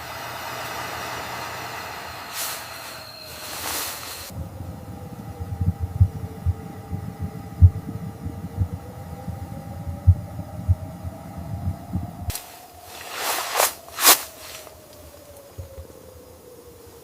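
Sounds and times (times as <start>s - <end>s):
faint steady hum: 0.0s - 17.0s
wind buffeting tent fabric: 11.6s - 14.8s.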